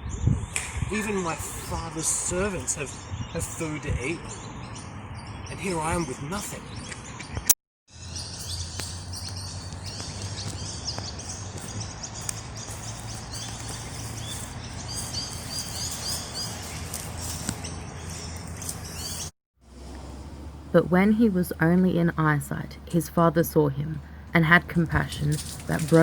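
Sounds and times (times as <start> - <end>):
small birds chirping: 0.1 - 19.3.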